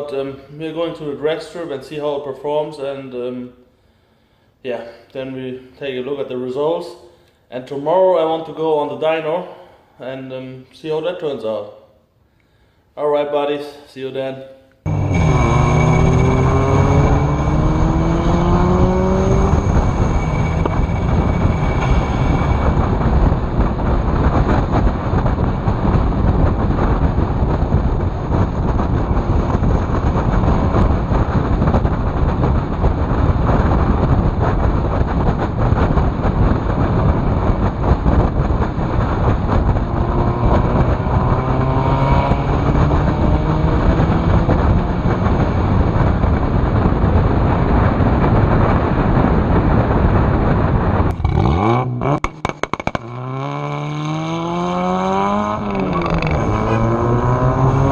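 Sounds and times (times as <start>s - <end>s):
car engine pulling: 14.9s - 25.0s, 51.1s - 57.9s
wind and road rumble: 14.9s - 57.9s
sharp cracks: 52.2s - 53.2s.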